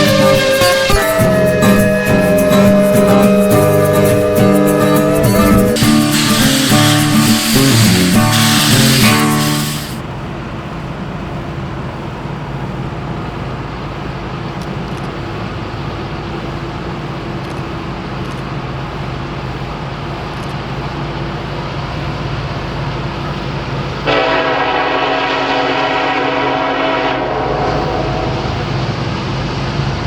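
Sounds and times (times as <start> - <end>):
locomotive air horn chord: 0.0 - 10.0, 24.0 - 28.8
low engine rumble: 0.0 - 24.3.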